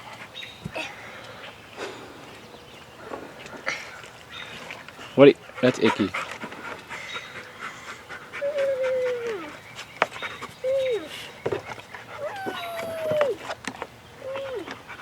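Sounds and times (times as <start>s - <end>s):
dog whining: 8.4s - 9.6s, 10.6s - 11.2s, 12.1s - 13.5s, 14.2s - 14.7s.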